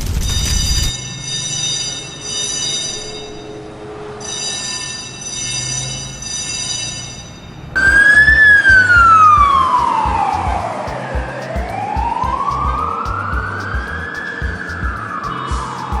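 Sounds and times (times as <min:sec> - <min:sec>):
siren wailing: 0:00.9 - 0:16.0
low uneven thumps: 0:07.9 - 0:16.0.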